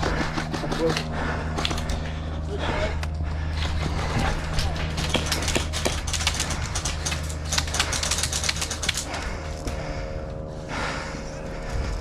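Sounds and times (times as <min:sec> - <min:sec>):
airsoft rifle firing: 0:05.0 - 0:09.0.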